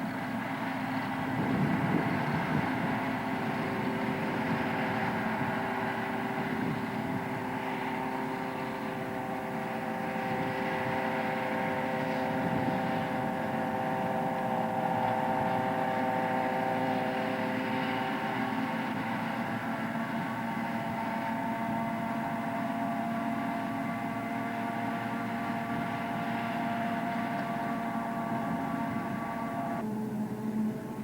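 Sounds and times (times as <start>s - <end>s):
engine rumble: 0.0s - 31.0s
harvester whine: 0.0s - 31.0s.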